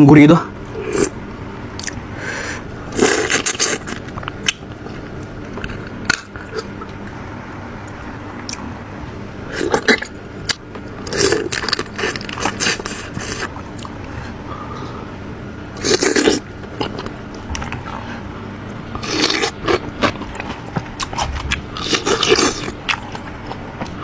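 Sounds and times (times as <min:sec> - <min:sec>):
small clicks and wet eating sounds: 0:01.7 - 0:02.0, 0:02.8 - 0:07.2, 0:07.8 - 0:08.7, 0:09.6 - 0:14.1, 0:15.7 - 0:24.0.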